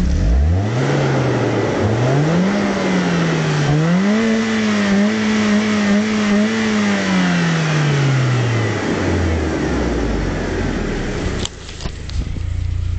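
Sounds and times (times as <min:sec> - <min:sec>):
car engine revving then idling: 0:00.0 - 0:12.9.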